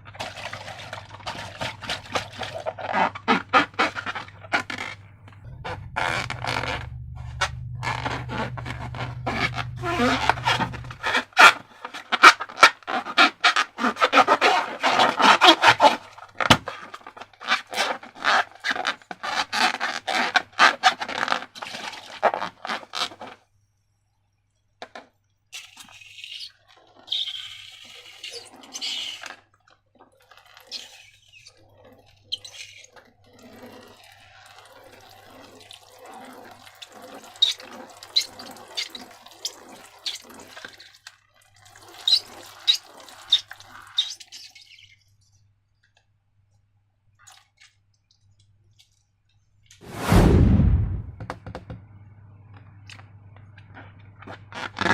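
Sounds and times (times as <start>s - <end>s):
wet slime squelching: 0.0s - 23.3s.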